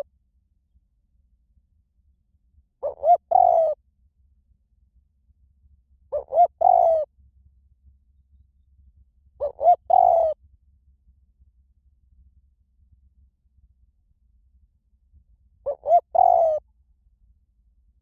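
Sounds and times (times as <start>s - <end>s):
dove cooing: 2.8s - 3.8s, 6.1s - 7.1s, 9.4s - 10.4s, 15.6s - 16.6s.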